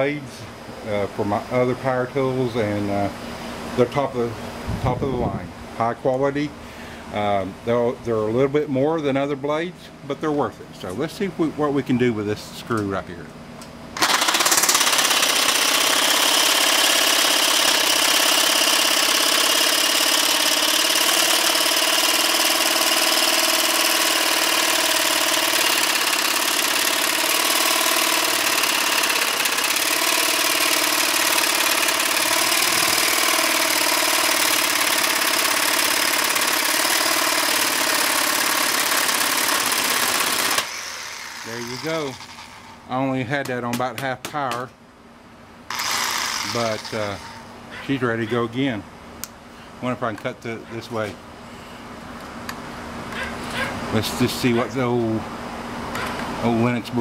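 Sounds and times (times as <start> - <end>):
reciprocating saw cutting metal screw: 14.0 - 42.8, 45.7 - 47.4.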